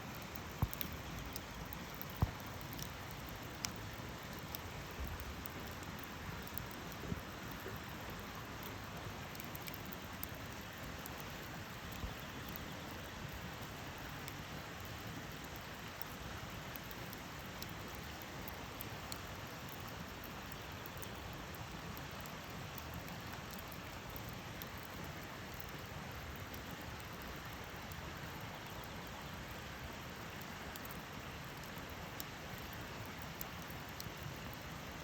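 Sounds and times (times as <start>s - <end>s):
campfire crackling: 0.0s - 35.0s
burning wood popping: 0.1s - 10.6s.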